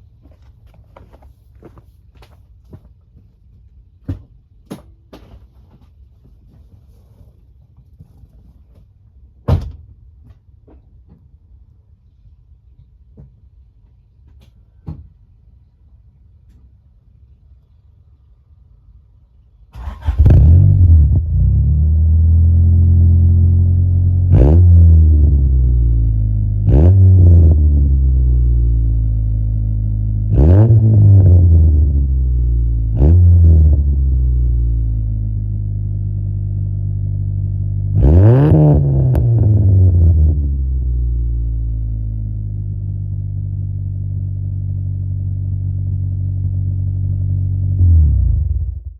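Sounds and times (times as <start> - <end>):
car engine idling and revving: 19.8 - 48.9.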